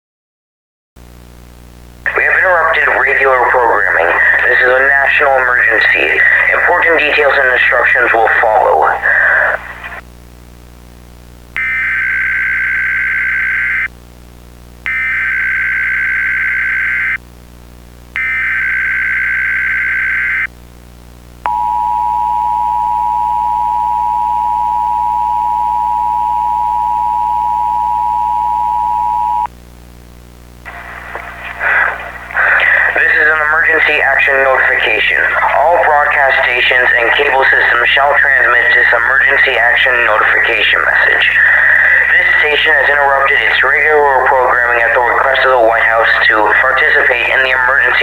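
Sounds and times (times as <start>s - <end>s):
faint low hum: 1.0s - 48.0s
two-tone attention signal: 21.5s - 29.5s.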